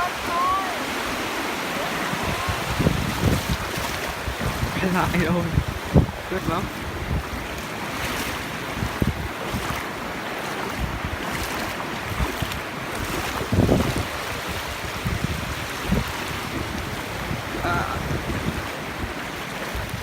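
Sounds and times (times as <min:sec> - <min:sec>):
waves washing: 0:00.0 - 0:20.0
wind buffeting microphone: 0:00.0 - 0:20.0.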